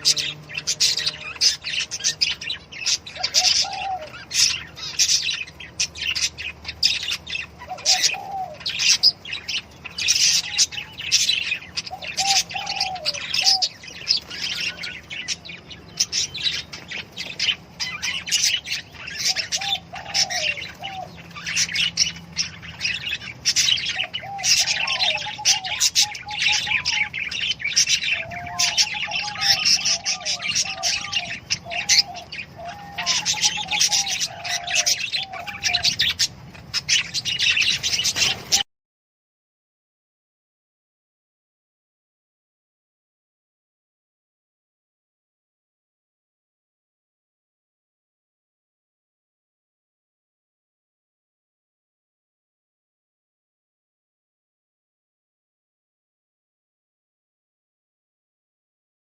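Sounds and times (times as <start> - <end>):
parrots chirping: 0.0 - 38.6
low warbling bird call: 0.0 - 38.7.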